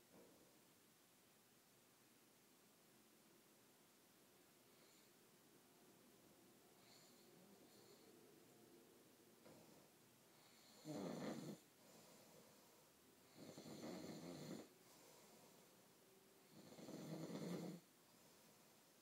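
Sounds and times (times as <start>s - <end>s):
man snoring: 10.4s - 11.6s, 13.3s - 14.7s, 16.5s - 17.8s.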